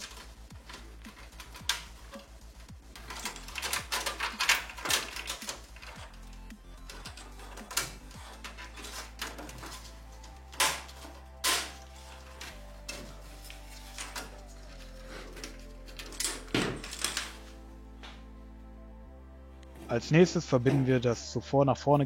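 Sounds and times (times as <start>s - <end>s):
computer parts clicking and knocking: 0.0s - 13.1s, 15.2s - 17.5s
background music with held tones: 0.0s - 22.0s.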